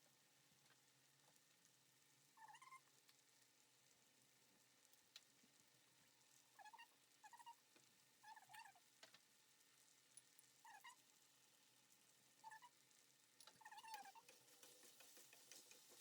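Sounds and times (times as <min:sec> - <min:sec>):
faint short animal calls: 0:02.4 - 0:02.9, 0:06.6 - 0:07.6, 0:08.2 - 0:08.8, 0:10.6 - 0:11.0, 0:12.4 - 0:12.8, 0:13.6 - 0:14.2
faint clicks: 0:02.4 - 0:03.3, 0:04.8 - 0:05.7, 0:06.3 - 0:09.3, 0:12.4 - 0:16.0.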